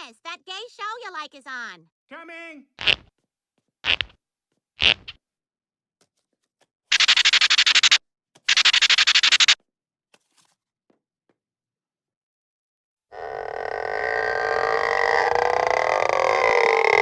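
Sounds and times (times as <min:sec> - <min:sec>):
cartoon scratchy rattling: 0:03.8 - 0:04.1, 0:04.8 - 0:05.2, 0:06.9 - 0:09.6.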